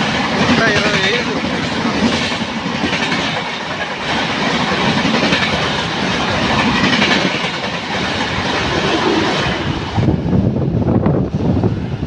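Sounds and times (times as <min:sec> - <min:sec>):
train wheels clattering: 0:00.0 - 0:09.6
train rushing: 0:00.0 - 0:12.0.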